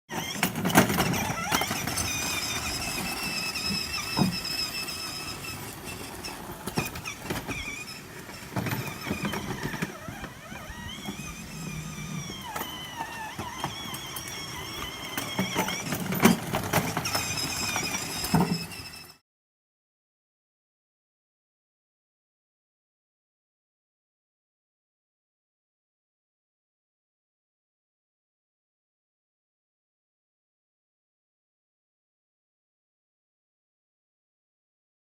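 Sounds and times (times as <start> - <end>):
small electric motor whining: 0.1 - 19.2.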